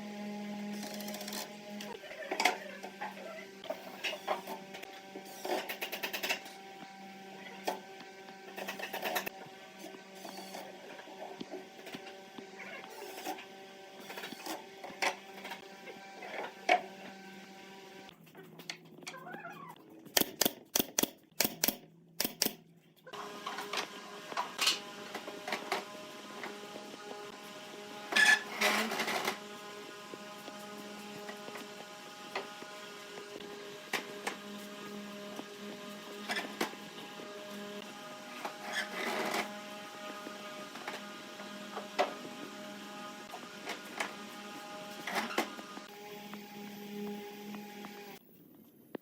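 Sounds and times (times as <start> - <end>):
machine hum: 0.0 - 18.2, 23.2 - 48.2.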